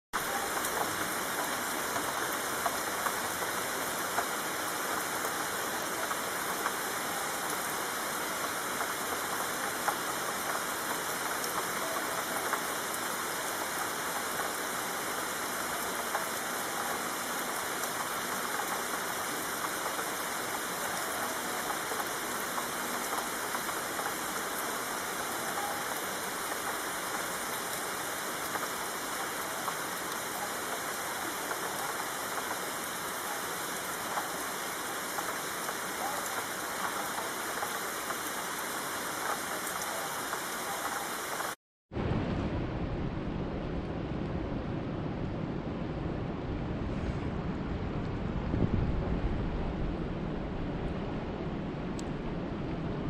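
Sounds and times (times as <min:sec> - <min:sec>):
rain drop ticks: 0:00.2 - 0:41.6
steady rain hiss: 0:00.2 - 0:53.0.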